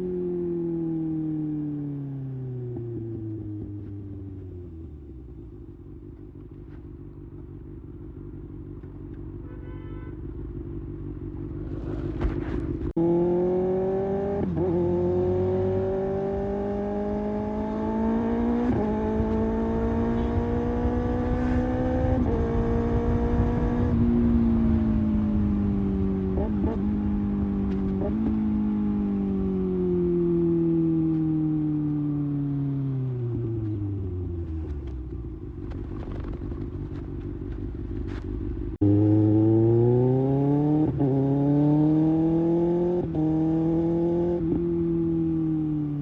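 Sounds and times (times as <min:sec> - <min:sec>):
motorcycle engine accelerating: 0:10.3 - 0:46.0.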